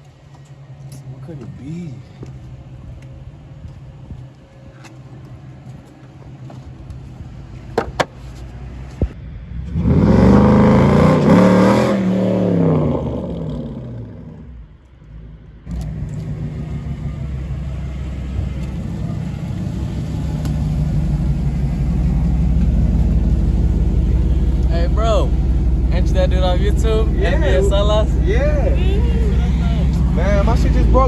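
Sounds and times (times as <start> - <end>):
car engine revving: 8.2 - 31.0.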